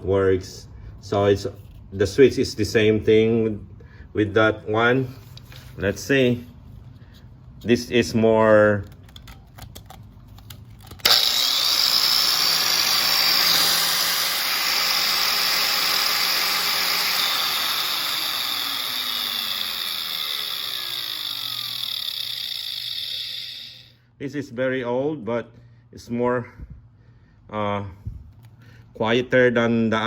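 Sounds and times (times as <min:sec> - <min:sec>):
angle grinder whining: 0:11.0 - 0:24.0.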